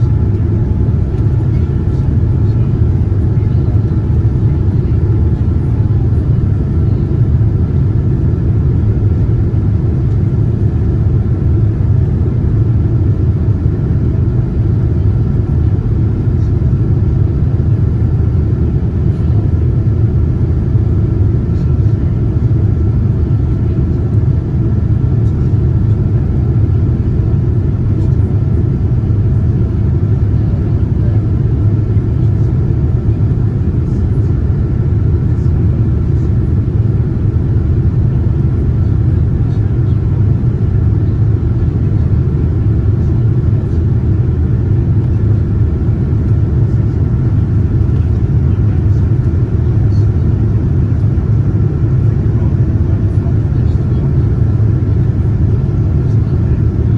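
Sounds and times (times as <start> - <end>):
aircraft cabin engine rumble: 0.0 - 56.9
faint steady whine: 0.0 - 56.9.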